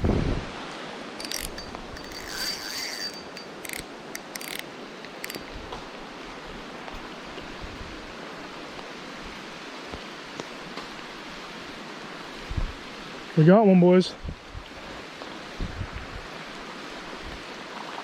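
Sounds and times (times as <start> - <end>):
flowing river water: 0.0 - 18.0
fishing reel ratcheting clicks: 1.2 - 5.5.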